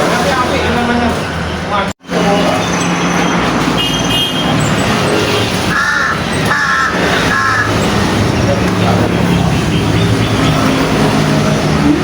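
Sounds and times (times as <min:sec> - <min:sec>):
crow cawing: 0:05.7 - 0:07.7.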